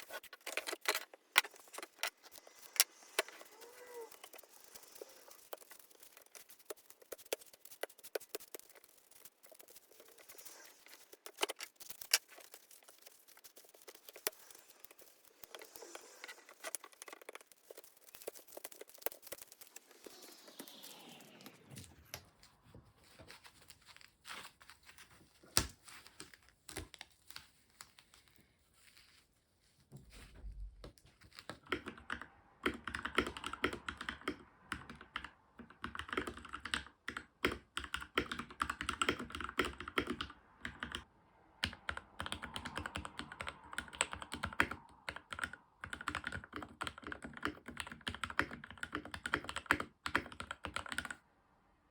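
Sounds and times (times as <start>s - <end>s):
mechanical keyboard typing: 0.0s - 21.2s, 31.6s - 51.2s.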